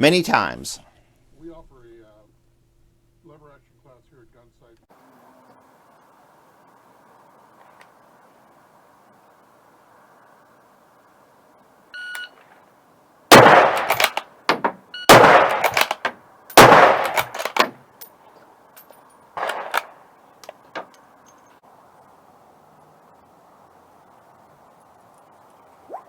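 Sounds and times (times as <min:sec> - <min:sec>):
rifle shots ringing: 0:13.3 - 0:17.8, 0:19.4 - 0:20.0
rifle action metallic clicks: 0:13.3 - 0:18.1, 0:18.8 - 0:21.5.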